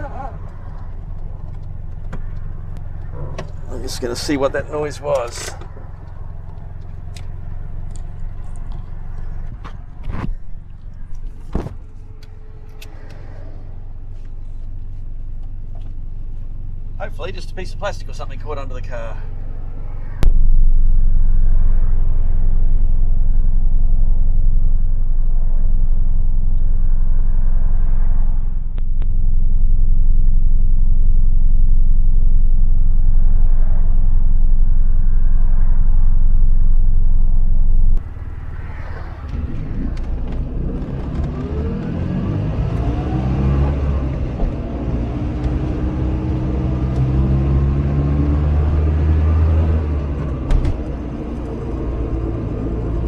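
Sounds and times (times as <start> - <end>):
small car engine droning: 0.0 - 20.4, 21.1 - 53.0
engine revving up: 38.0 - 53.0.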